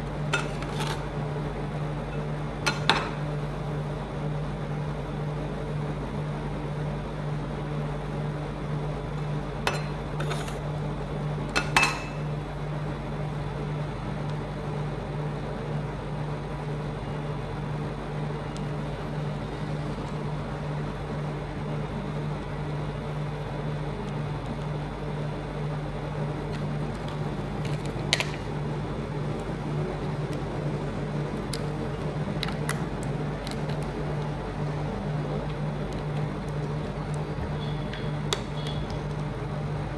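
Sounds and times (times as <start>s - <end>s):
low mechanical hum: 0.0s - 39.9s
utensils clinking: 0.3s - 1.1s, 2.1s - 3.4s, 9.7s - 10.7s, 11.6s - 12.3s, 26.6s - 28.6s.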